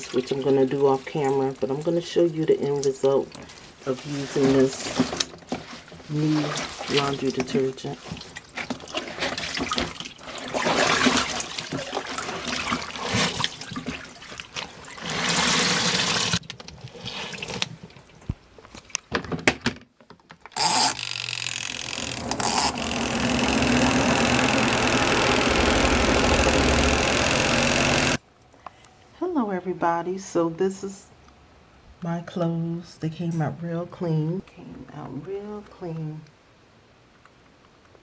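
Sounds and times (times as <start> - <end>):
sloshing water: 2.8 - 15.6
washing machine spin motor humming: 20.6 - 28.2.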